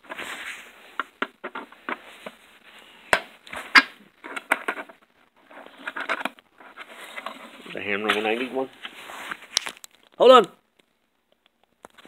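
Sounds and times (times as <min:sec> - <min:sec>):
hand tools and plastic parts clattering: 0:00.0 - 0:02.4, 0:03.1 - 0:09.0.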